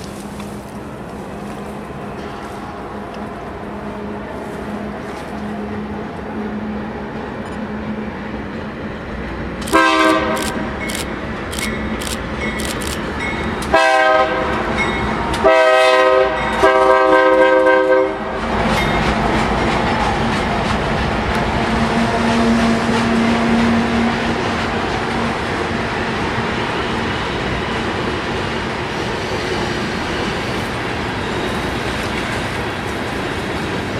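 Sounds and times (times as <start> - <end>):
train rumbling past: 0.0 - 33.9
locomotive horn blasts: 9.7 - 10.7, 13.6 - 14.8, 15.4 - 18.3.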